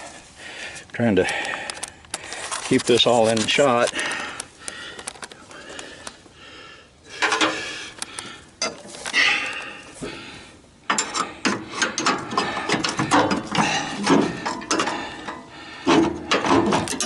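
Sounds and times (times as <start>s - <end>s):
pry bar scraping metal: 10.9s - 17.0s.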